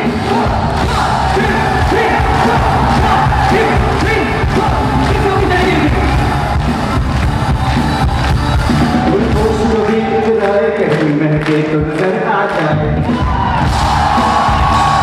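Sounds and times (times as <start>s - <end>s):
live band music with beat: 0.0s - 10.7s, 12.7s - 15.0s
person singing: 7.8s - 13.4s.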